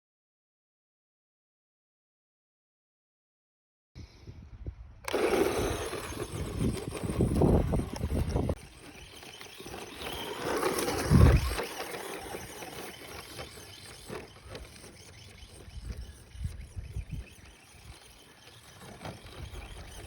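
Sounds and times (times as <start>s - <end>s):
toy truck motor whining: 5.0s - 20.0s.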